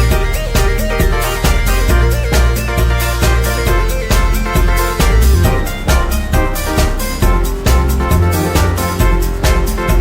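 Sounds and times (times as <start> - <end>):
background music with beat: 0.0 - 10.0.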